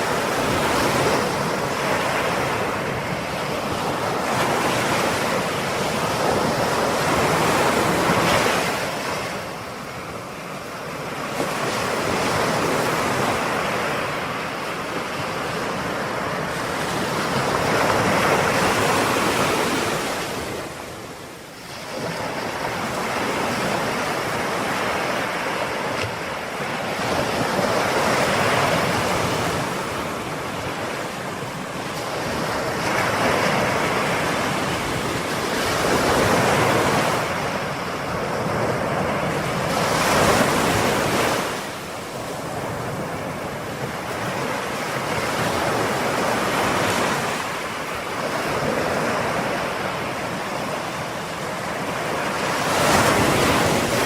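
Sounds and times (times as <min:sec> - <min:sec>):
ocean waves breaking on shore: 0:00.0 - 0:54.0
wind on microphone: 0:00.0 - 0:54.0.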